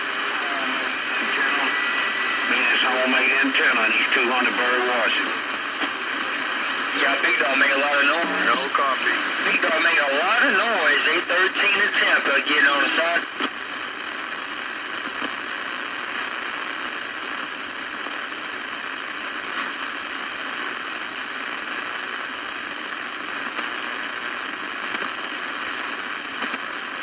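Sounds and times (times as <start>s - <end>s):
faint crackle: 0.0s - 27.0s
radio static hiss: 0.0s - 27.0s.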